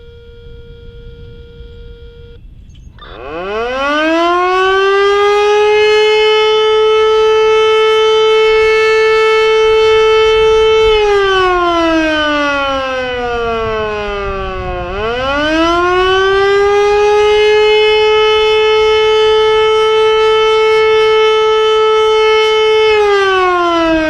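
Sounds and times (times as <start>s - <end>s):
faint steady tone: 0.0s - 3.9s
warning siren wailing: 0.0s - 24.0s.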